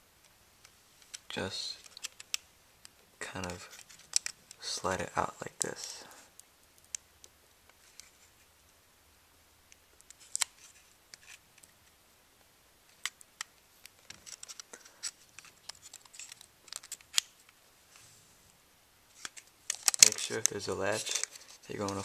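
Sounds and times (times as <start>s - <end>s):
plastic parts clicking and scraping: 1.0s - 4.7s, 7.7s - 8.4s, 10.0s - 11.8s, 12.9s - 17.6s, 19.1s - 22.0s.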